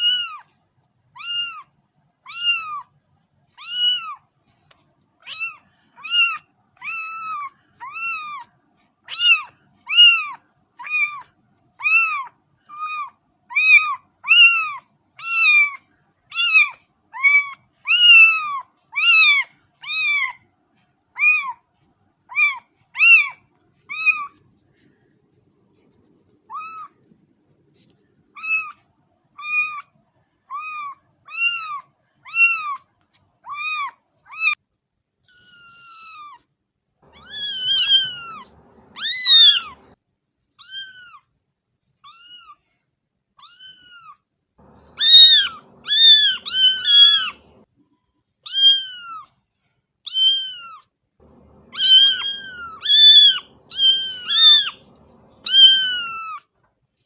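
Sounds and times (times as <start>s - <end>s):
cat meowing: 0.0s - 0.5s, 1.2s - 1.7s, 2.3s - 2.9s, 3.6s - 4.2s, 5.2s - 8.5s, 9.1s - 20.4s, 21.2s - 21.6s, 22.3s - 24.4s, 26.5s - 27.0s, 28.4s - 28.8s, 29.4s - 29.9s, 30.5s - 32.8s, 33.4s - 34.6s, 35.3s - 36.4s, 37.1s - 40.0s, 40.6s - 41.3s, 42.0s - 42.6s, 43.4s - 47.6s, 48.4s - 49.3s, 50.1s - 56.4s.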